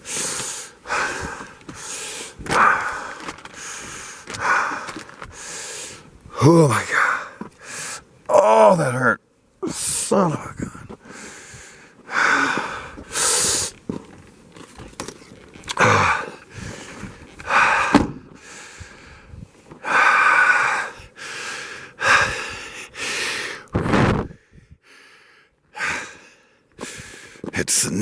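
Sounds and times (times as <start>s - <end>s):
man gasping breaths: 0.0s - 6.1s, 11.0s - 13.7s, 15.8s - 23.7s, 24.3s - 27.5s
man groaning: 15.7s - 16.4s.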